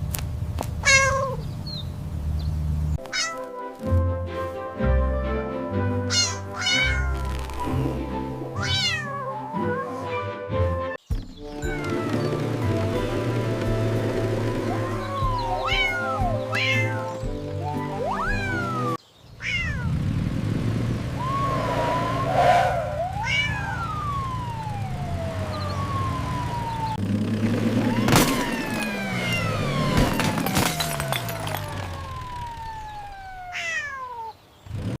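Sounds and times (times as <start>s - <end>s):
cat meowing: 0.8s - 1.4s, 3.1s - 3.5s, 6.1s - 7.2s, 8.6s - 10.0s, 14.8s - 17.2s, 18.0s - 19.9s, 23.2s - 24.1s, 33.4s - 34.4s
backing track music: 3.5s - 6.6s.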